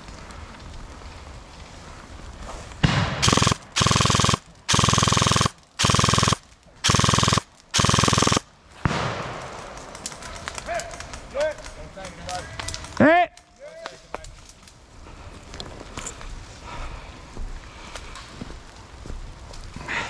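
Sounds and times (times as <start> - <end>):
airsoft rifle bursts: 3.1 - 8.5
steady whine: 3.2 - 8.4.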